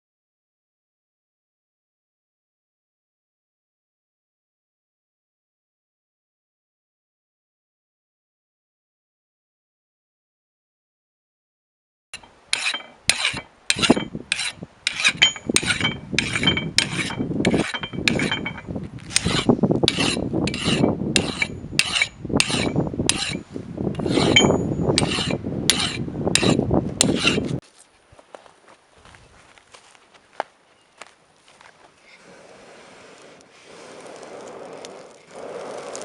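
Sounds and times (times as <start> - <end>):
hammer striking steel on anvil: 12.2 - 23.4, 24.0 - 27.4.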